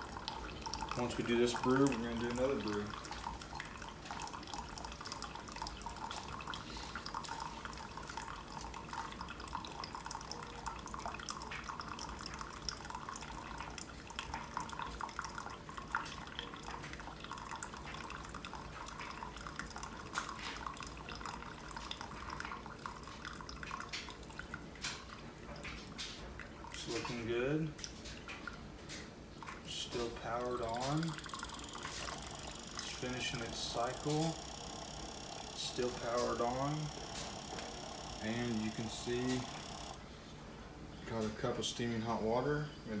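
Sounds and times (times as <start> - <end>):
water dripping into cup: 0.0 - 40.0
small ticks: 30.8 - 40.0.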